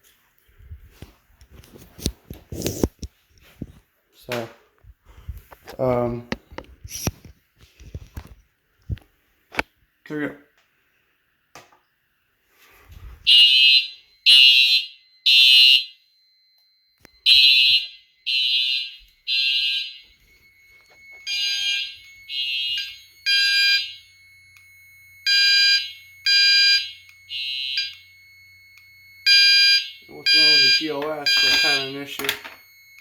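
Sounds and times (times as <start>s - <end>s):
fire alarm horns blasting: 12.7s - 33.0s
lower purer alarm horn: 13.2s - 33.0s.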